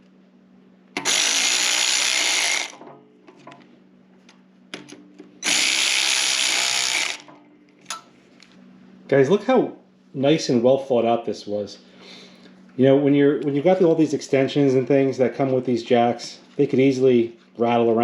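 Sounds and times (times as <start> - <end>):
power drill tightening bolts: 5.4 - 7.2.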